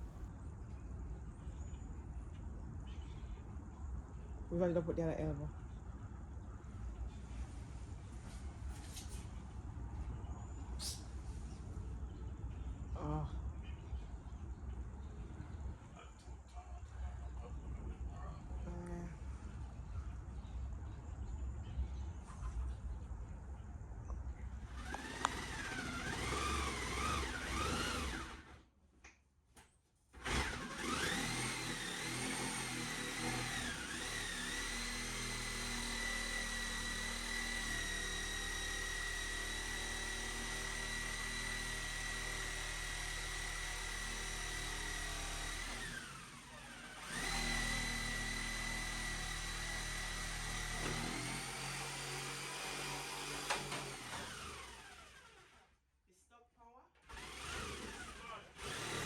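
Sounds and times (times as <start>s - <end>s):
power drill whining: 24.7s - 28.6s, 30.2s - 55.7s, 57.1s - 59.0s.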